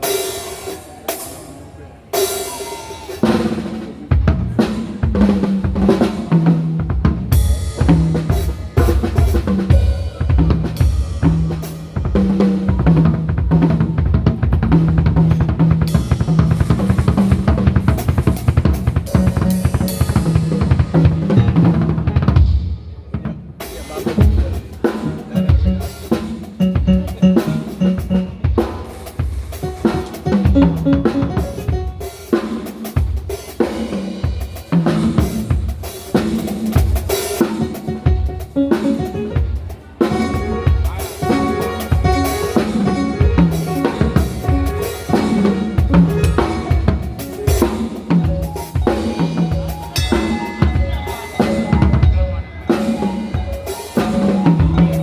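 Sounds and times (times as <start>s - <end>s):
drum kit groove: 0.0s - 1.6s, 2.2s - 55.0s
low bass line: 26.6s - 28.7s.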